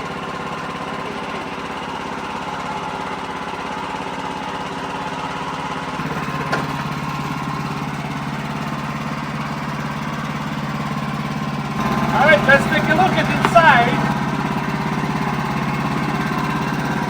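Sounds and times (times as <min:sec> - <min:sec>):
sawmill engine running: 0:06.0 - 0:17.0.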